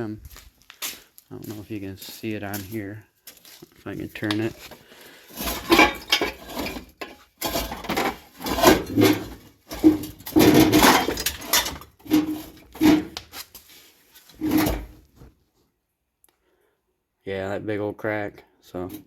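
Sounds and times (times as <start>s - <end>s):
clunks and knocks of handling: 4.2s - 13.4s.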